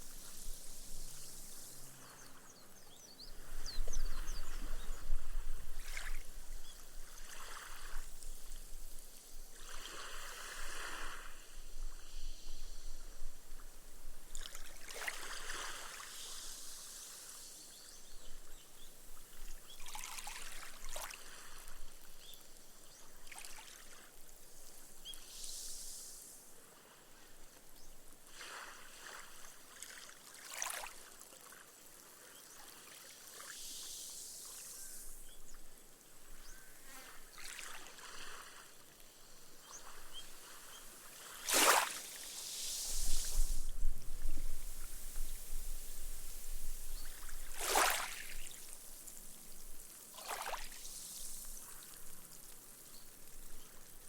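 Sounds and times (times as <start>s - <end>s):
small waves washing on sand: 3.4s - 12.3s, 14.3s - 18.0s, 19.2s - 35.3s, 36.8s - 54.0s
foam fizzing into sand: 14.8s - 17.9s, 39.7s - 54.0s.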